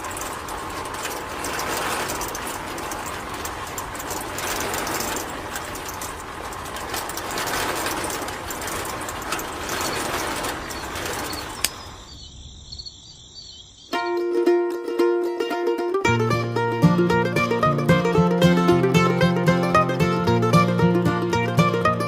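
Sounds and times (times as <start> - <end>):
small electric motor with rattling gears: 0.0 - 12.0.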